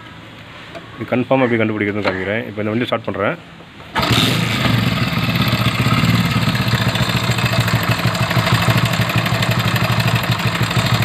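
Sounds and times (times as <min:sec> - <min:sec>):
motorcycle engine starting and idling: 0:03.9 - 0:11.0.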